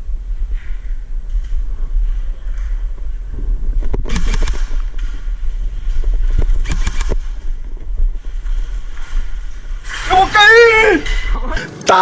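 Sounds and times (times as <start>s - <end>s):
microphone handling noise: 0.0s - 10.1s
wind rumble: 0.0s - 11.7s
sharp clicks and knocks: 2.4s - 5.3s, 6.3s - 8.0s.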